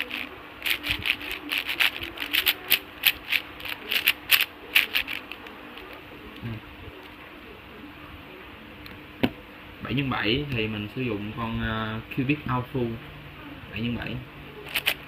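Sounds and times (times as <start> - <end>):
speed cube clacking: 0.0 - 6.0, 14.6 - 15.0.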